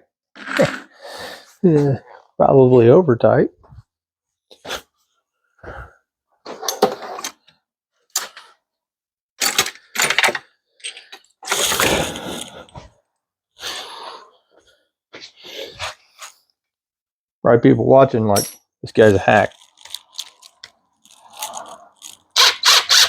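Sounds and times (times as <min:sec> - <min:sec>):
metal tools clinking: 0:18.3 - 0:22.4.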